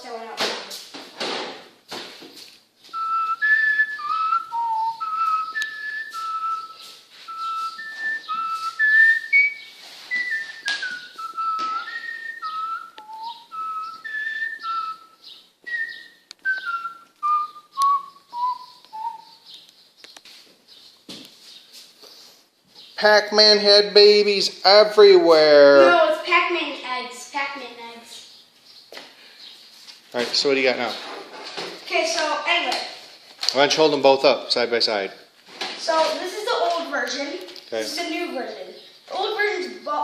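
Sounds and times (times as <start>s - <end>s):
person whistling a tune: 2.9s - 19.4s.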